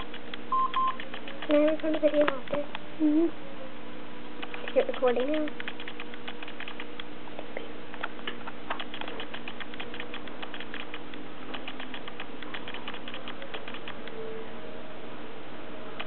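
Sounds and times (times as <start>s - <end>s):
rats clicking: 0.0s - 2.8s, 4.4s - 7.1s, 7.9s - 14.2s.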